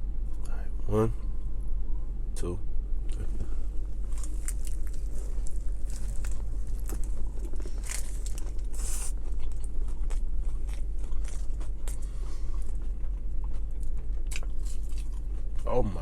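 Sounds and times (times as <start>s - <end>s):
steady low hum: 0.0s - 16.0s
person chewing food: 3.1s - 15.7s.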